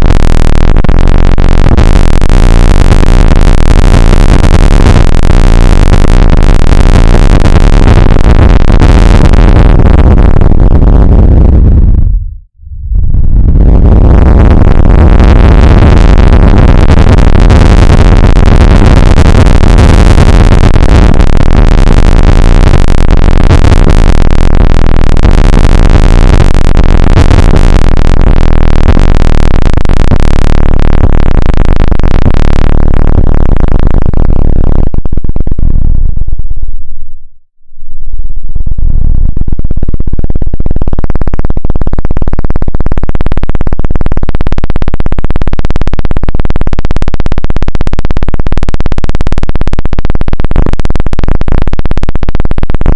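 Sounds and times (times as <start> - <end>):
harsh synthesizer noise: 0.0 - 36.2.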